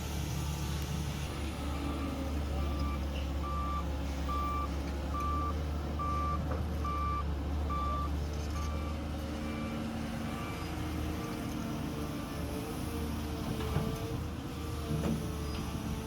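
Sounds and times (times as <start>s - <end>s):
diesel engine running: 0.0s - 16.0s
reversing alarm beeping: 2.6s - 10.6s.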